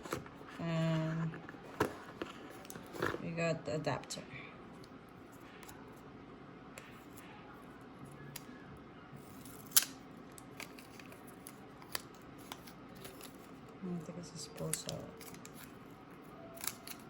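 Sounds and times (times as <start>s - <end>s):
clicks from handling packaging: 16.6s - 17.0s.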